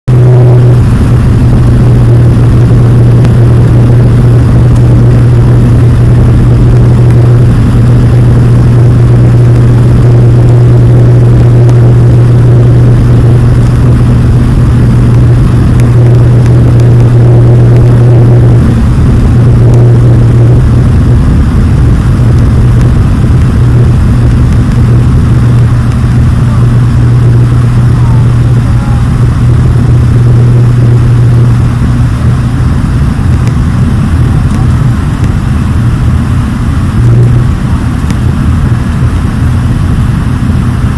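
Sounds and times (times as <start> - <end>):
turboprop engines droning: 0.0 - 40.9
rushing noise: 0.1 - 40.9.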